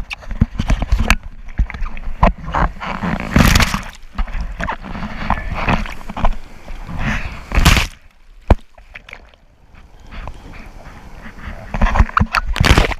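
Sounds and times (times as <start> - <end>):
surf water: 0.0 - 12.9
wind on microphone: 9.6 - 12.9.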